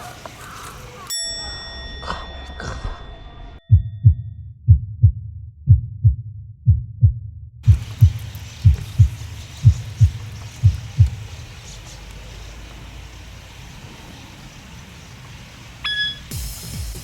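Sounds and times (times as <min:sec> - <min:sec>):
bell-like ding: 0:01.1 - 0:04.3
heartbeat thumps: 0:03.6 - 0:12.0.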